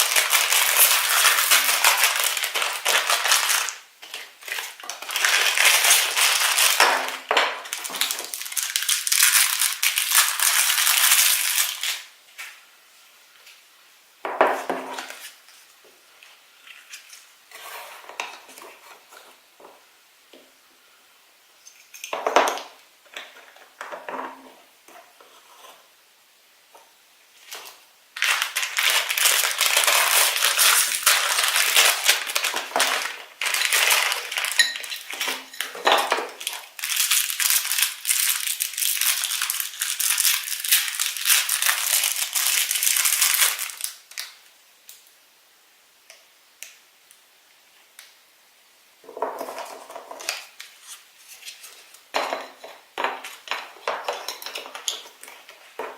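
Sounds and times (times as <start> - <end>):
plastic pieces clicking: 0.0 - 7.2
plastic packaging crinkling: 0.0 - 12.6, 27.4 - 44.4.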